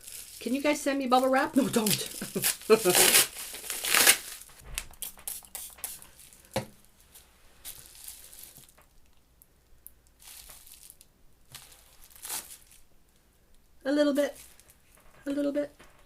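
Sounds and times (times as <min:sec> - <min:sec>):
paper or plastic crackling: 0:00.0 - 0:06.6, 0:10.2 - 0:12.8.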